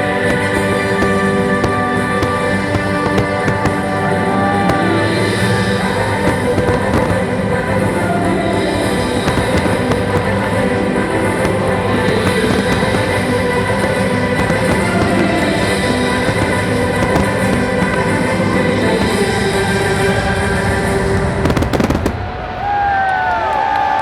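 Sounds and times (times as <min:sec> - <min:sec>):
loud show music: 0:00.0 - 0:22.2
faint firework pops: 0:06.1 - 0:07.2, 0:09.0 - 0:10.5, 0:11.2 - 0:19.4.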